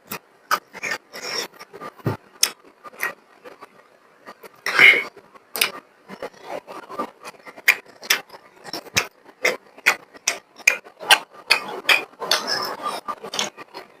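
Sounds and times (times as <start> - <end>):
person chewing food: 4.6 - 13.8.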